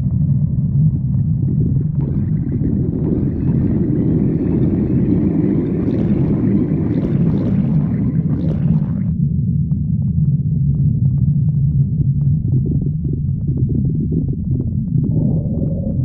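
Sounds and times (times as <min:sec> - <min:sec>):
stomach growling: 0:00.0 - 0:09.2, 0:10.7 - 0:16.0.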